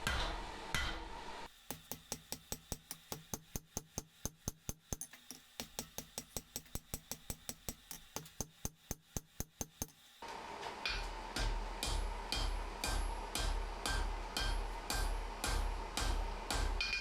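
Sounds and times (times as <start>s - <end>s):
hammer striking steel on anvil: 1.7s - 10.0s, 10.9s - 17.0s.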